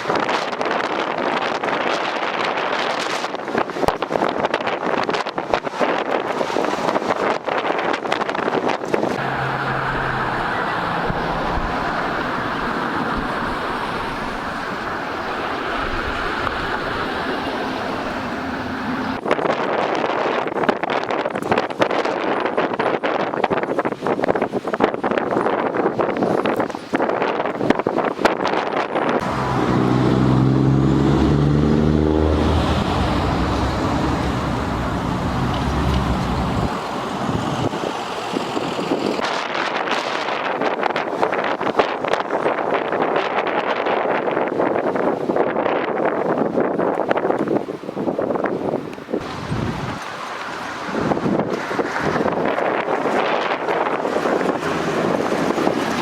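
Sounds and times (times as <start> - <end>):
strong gusty wind: 0.0 - 56.0
wind buffeting microphone: 0.0 - 56.0
vehicle driving past: 9.2 - 19.2, 29.2 - 39.2.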